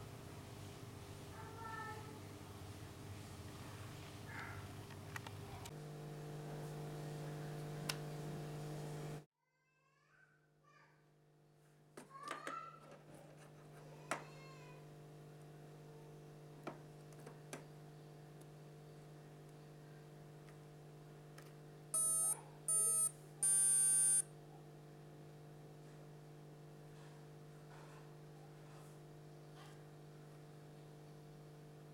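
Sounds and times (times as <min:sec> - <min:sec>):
electronic beeps: 0:22.0 - 0:24.2.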